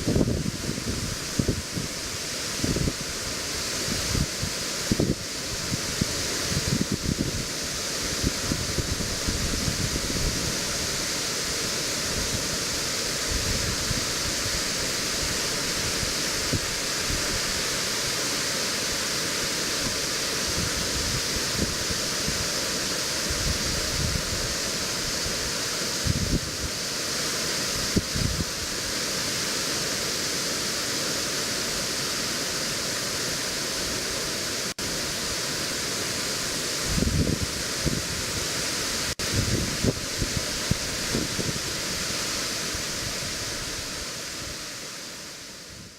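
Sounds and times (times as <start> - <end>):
waterfall rushing: 0.0 - 45.9
wind thumps on microphone: 26.0 - 26.7, 27.9 - 28.6, 36.8 - 38.2, 39.2 - 41.6.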